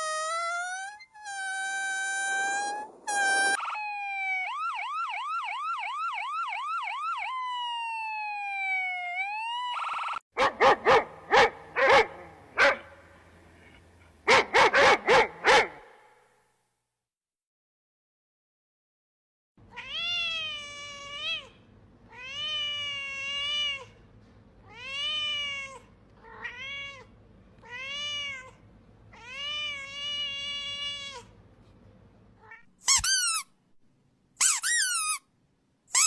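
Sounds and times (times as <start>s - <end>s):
warbling siren-like tone: 1.8s - 5.1s
dog barking sharply: 10.4s - 13.0s, 14.3s - 16.1s.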